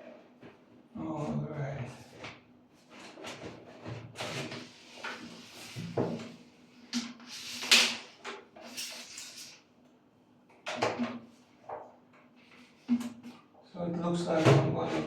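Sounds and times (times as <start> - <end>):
objects knocking and rattling: 10.6 - 12.0.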